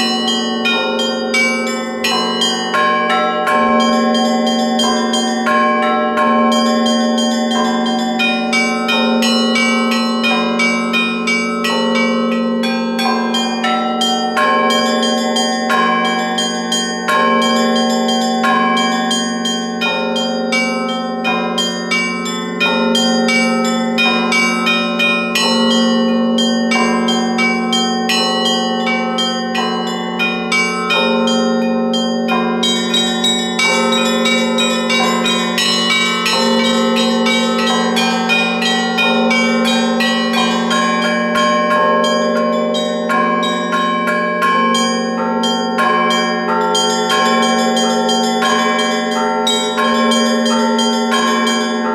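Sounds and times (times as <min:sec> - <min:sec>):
small high-pitched bells ringing: 0:00.0 - 0:51.9
deep bell strikes: 0:30.9 - 0:44.9.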